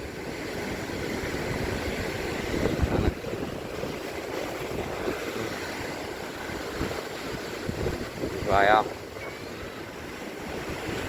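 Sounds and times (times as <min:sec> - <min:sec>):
surf washing: 0:00.0 - 0:11.0
wind buffeting microphone: 0:00.0 - 0:11.0.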